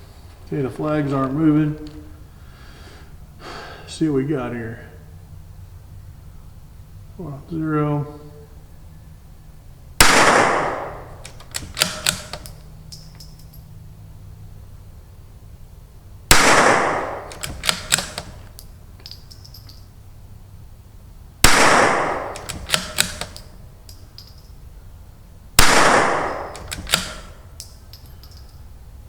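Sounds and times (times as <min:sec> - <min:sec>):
rifle shots echoing: 0:10.0 - 0:12.6, 0:16.3 - 0:18.6, 0:21.4 - 0:23.6, 0:25.6 - 0:27.6
rifle bolt clicks: 0:10.0 - 0:13.6, 0:16.3 - 0:19.8, 0:21.5 - 0:24.5, 0:25.6 - 0:28.6.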